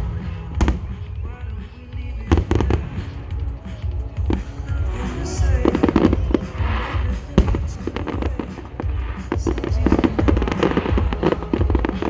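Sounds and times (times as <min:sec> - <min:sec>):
sharp firework bang: 0:00.0 - 0:01.7
fireworks booming and crackling: 0:00.0 - 0:12.0
music from loudspeakers: 0:00.0 - 0:12.0.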